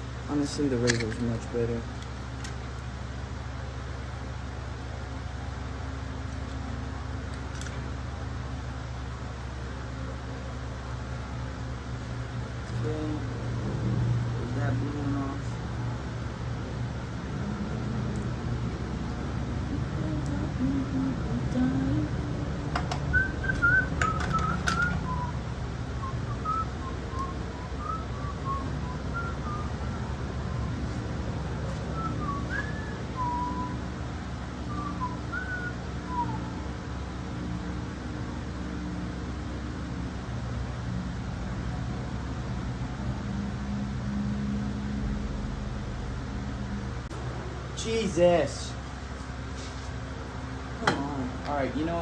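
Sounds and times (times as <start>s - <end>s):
low machine hum: 0.0s - 52.0s
faint pitched drone: 5.8s - 52.0s
person whistling a tune: 23.1s - 25.4s, 26.0s - 30.1s, 31.8s - 33.8s, 34.7s - 36.6s.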